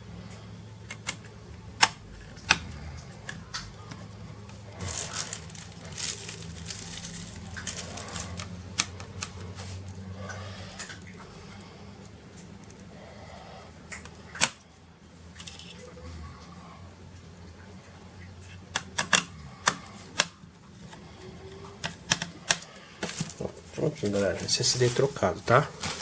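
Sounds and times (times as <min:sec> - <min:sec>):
faint low hum: 0:00.0 - 0:26.0
scraping rustling handling noise: 0:00.3 - 0:12.9, 0:18.4 - 0:26.0
sharp plastic and metal clicks: 0:00.8 - 0:09.6, 0:13.9 - 0:14.6, 0:18.7 - 0:21.0, 0:21.6 - 0:23.4.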